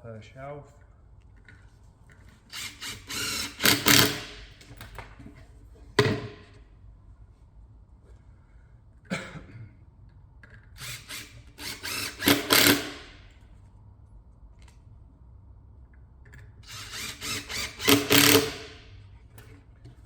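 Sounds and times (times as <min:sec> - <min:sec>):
power drill driving screws: 0:02.5 - 0:04.6, 0:10.8 - 0:13.2, 0:16.6 - 0:18.9.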